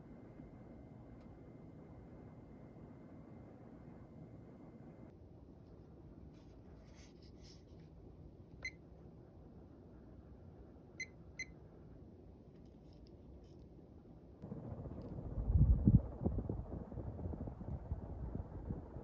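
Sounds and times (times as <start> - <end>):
ceiling fan running: 14.4 - 19.0.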